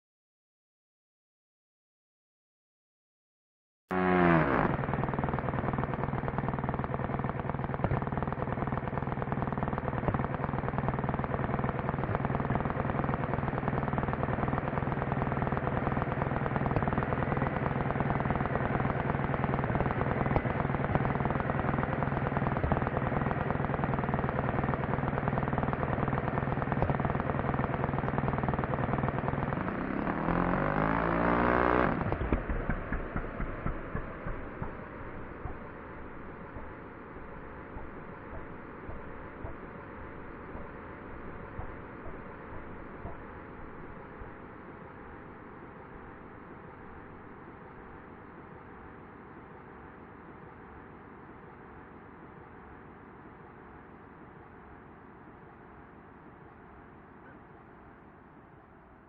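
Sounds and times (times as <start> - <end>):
model airplane engine running: 3.9 - 48.0.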